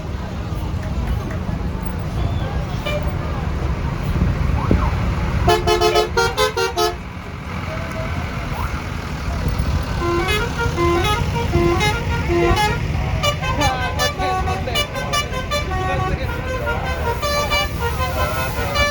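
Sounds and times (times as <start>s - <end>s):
bus engines rumbling: 0.0s - 18.9s
musical air horn tune: 5.5s - 7.0s, 10.0s - 18.9s.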